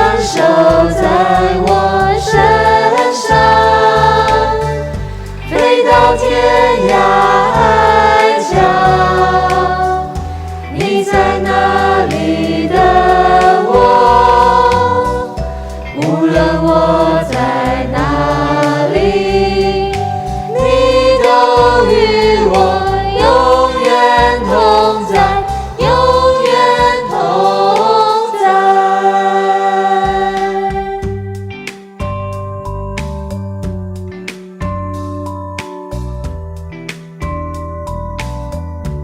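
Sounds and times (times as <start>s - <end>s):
voices singing together: 0.0s - 31.3s
instrumental backing with bass: 0.0s - 39.0s.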